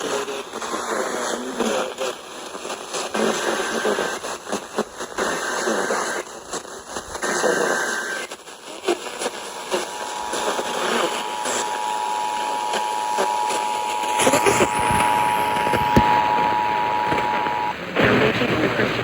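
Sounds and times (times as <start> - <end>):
garbled radio sound: 0.0 - 19.0
radio static hiss: 0.0 - 19.0
data tone bursts: 7.2 - 17.8.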